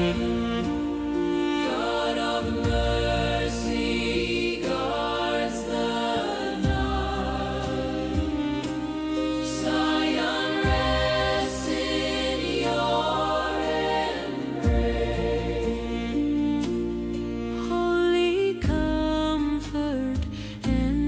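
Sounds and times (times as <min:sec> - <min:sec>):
person singing verses: 0:00.0 - 0:16.8
gentle cymbal swells: 0:00.0 - 0:18.6
soft choir-like voices: 0:00.0 - 0:20.8
slow devotional music: 0:00.0 - 0:21.0.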